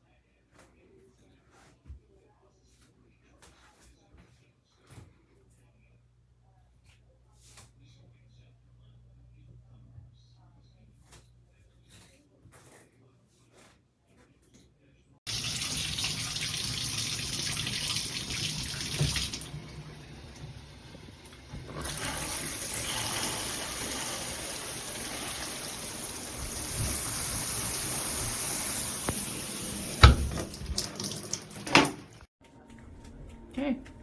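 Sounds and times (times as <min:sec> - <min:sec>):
water spraying from shower head: 0:21.8 - 0:31.9
sharp knock: 0:30.0 - 0:30.8.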